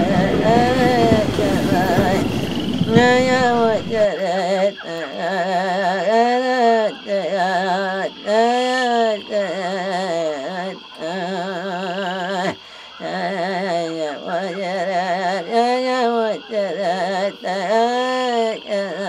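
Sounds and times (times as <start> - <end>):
high-pitched hum: 0.0 - 13.3
person chanting in held notes: 0.0 - 19.0.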